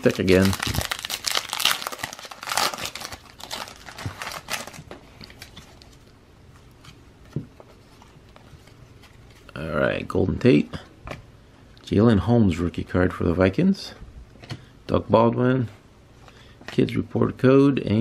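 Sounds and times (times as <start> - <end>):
foil wrapper crinkling and tearing: 0.0 - 5.5.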